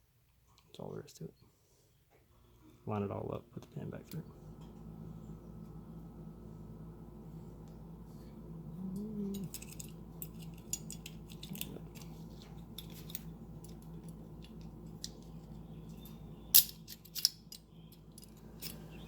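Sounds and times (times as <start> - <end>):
small metal parts clicking: 9.3 - 18.9.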